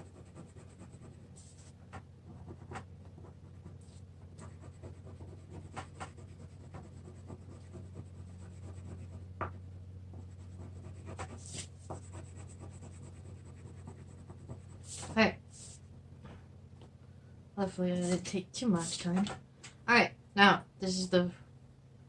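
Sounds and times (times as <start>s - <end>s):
colouring tool scratching paper: 0.0s - 1.7s, 2.3s - 9.3s, 10.2s - 15.8s
low steady hum: 0.0s - 22.0s.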